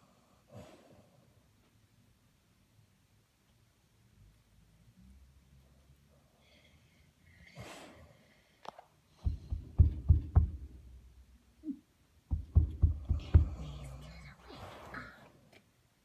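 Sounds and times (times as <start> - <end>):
dull low thumps and knocks: 9.2 - 11.4, 12.3 - 14.1.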